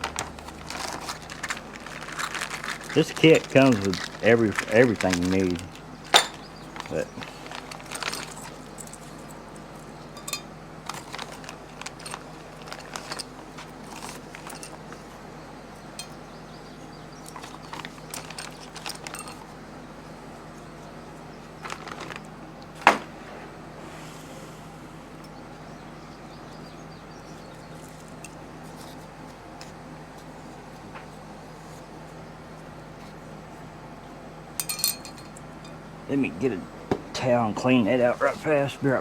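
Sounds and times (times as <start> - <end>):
small metal parts clinking: 0.0 - 9.2, 10.1 - 15.1, 17.3 - 19.5, 34.6 - 35.4.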